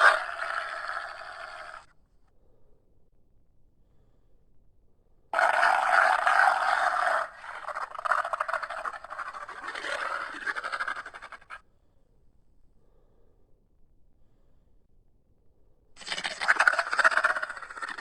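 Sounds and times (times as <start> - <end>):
harsh creature call: 0.0 - 1.9, 5.4 - 11.6, 16.0 - 18.0
rough pulsing growl: 0.0 - 1.9, 5.4 - 11.6.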